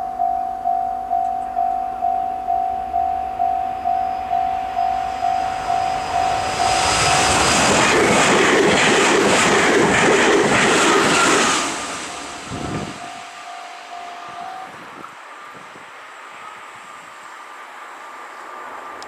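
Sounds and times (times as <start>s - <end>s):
level-crossing electronic bell: 0.0s - 7.6s, 12.1s - 14.7s
electric train passing: 0.0s - 19.0s
train wheel clatter: 6.1s - 13.1s.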